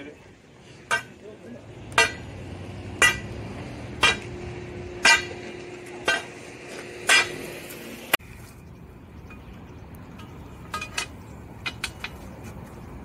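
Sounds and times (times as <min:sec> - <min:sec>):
hammer striking steel: 0:00.9 - 0:01.2, 0:01.9 - 0:07.6.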